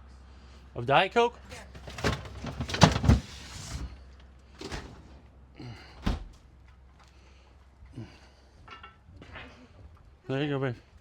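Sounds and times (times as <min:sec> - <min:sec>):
objects knocking and clunking: 0:01.5 - 0:03.9.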